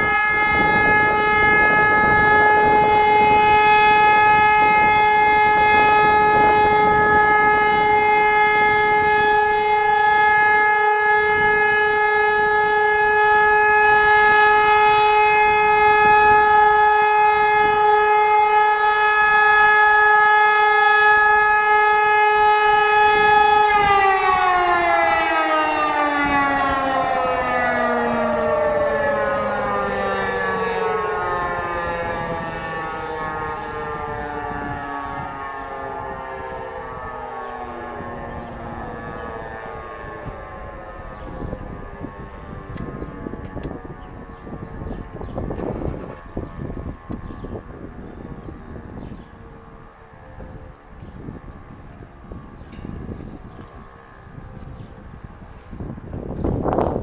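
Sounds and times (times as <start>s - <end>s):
siren winding down: 0.0s - 57.0s.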